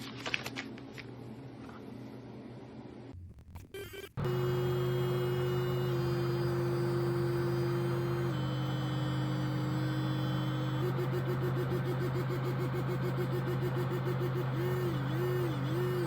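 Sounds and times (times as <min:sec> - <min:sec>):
electric toothbrush buzzing: 0:03.8 - 0:16.0.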